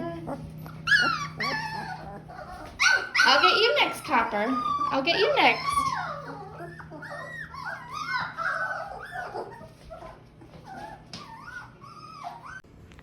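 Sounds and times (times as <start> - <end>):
puppies whimpering and squeaking: 0.0 - 12.8.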